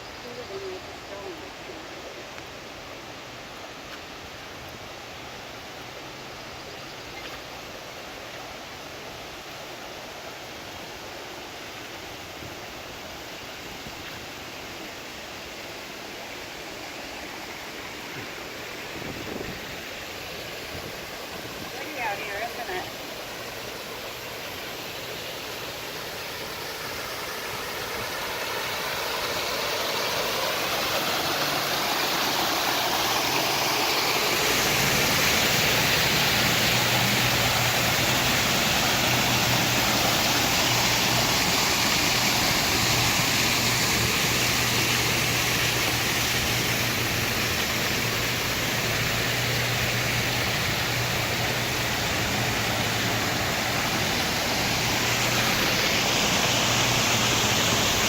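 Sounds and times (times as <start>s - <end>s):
water rushing in small stream: 0.0s - 58.0s
steady low hum: 23.0s - 58.0s.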